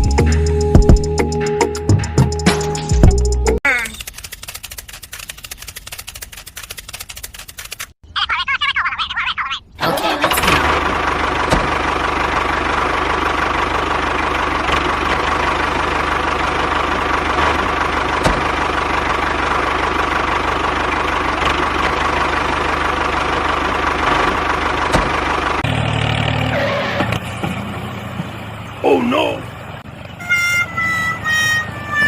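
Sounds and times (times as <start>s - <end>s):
engine idling: 9.8s - 32.0s.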